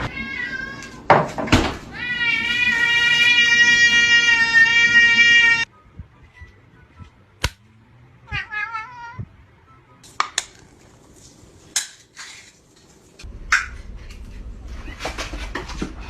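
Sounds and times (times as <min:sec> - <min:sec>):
cat meowing: 0:00.0 - 0:01.0, 0:01.9 - 0:05.7, 0:08.2 - 0:09.3.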